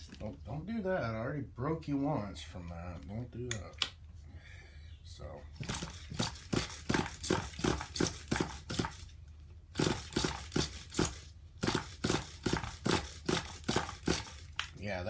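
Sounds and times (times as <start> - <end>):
recoil pull-starter pulls: 5.6 - 9.1, 9.8 - 14.7.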